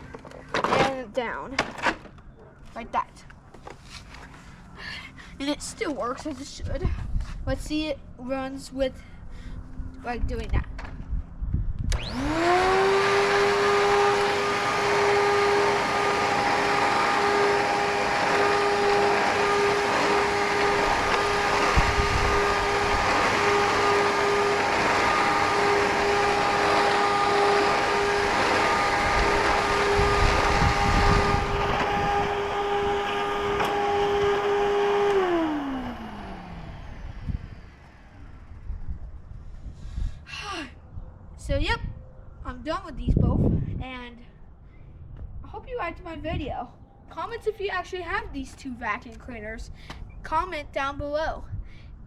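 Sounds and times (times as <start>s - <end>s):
vacuum cleaner running: 11.9s - 38.9s
vacuum motor winding down: 11.9s - 39.0s.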